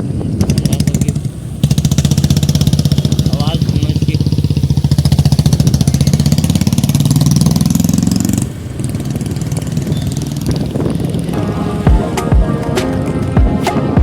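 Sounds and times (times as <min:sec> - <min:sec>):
motorbike engine revving: 0:00.0 - 0:14.0
background music: 0:11.4 - 0:14.0.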